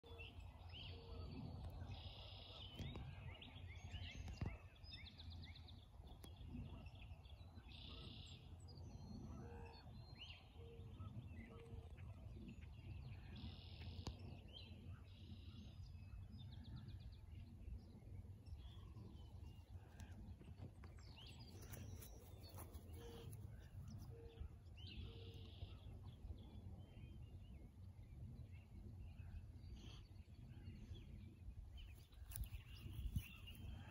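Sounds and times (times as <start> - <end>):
songbirds chirping: 0.0 - 33.9
steady low rumble: 11.0 - 33.9.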